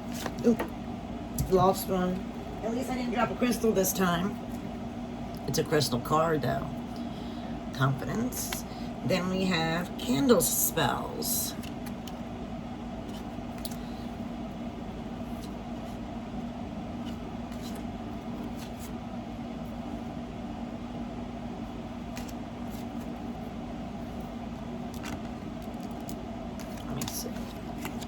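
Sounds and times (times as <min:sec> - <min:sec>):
low mechanical hum: 0:00.0 - 0:28.0
cards clicking and tapping: 0:24.9 - 0:28.0.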